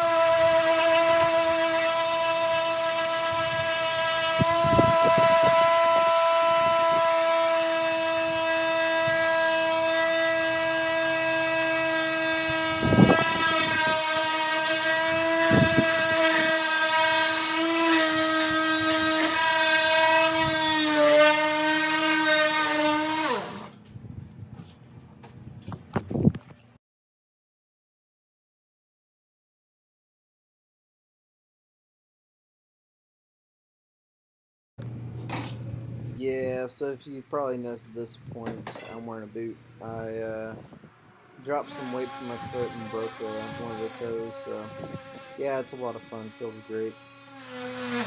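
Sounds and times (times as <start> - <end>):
power sander running on wood: 0.0 - 23.7, 41.4 - 48.0.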